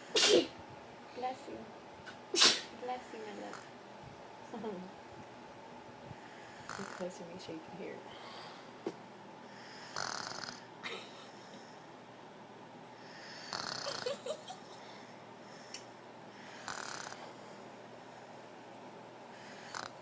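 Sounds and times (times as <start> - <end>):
baby snoring softly: 6.3 - 7.1, 9.6 - 10.7, 13.0 - 14.2, 16.4 - 17.4, 19.4 - 20.0.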